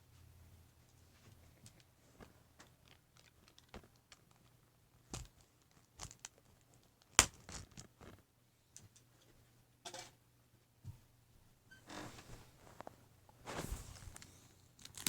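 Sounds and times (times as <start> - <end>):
plastic shrink wrap crinkling: 2.6 - 8.2, 13.5 - 15.0.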